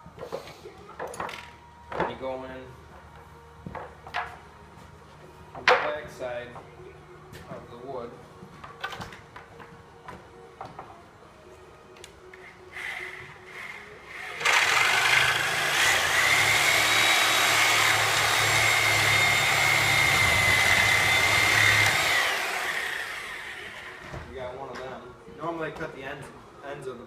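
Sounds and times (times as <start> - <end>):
reciprocating saw cutting nails: 12.8 - 23.9.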